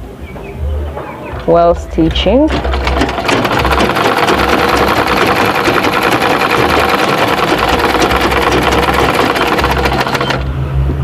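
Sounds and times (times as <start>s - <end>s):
sewing machine stitching: 2.4s - 10.5s.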